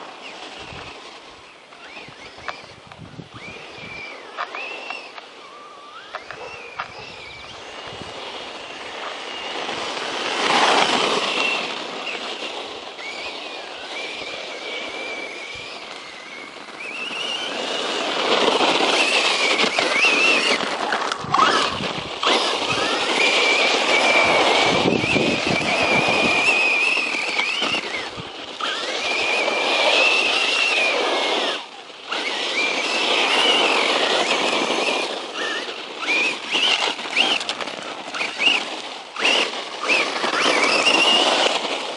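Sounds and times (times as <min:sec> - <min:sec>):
electric motor whining: 0:00.0 - 0:41.9
rushing tyres and drivetrain: 0:00.0 - 0:41.9.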